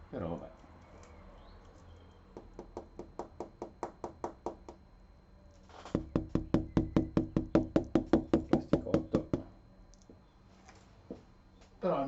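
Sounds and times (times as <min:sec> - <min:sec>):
fingers tapping on plastic panel: 0:06.0 - 0:09.5.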